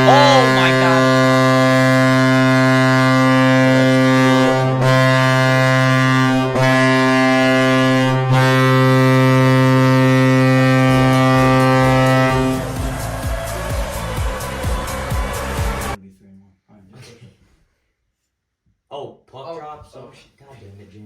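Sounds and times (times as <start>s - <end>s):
hockey goal horn blaring: 0.0s - 16.0s
music with a beat: 11.0s - 16.0s.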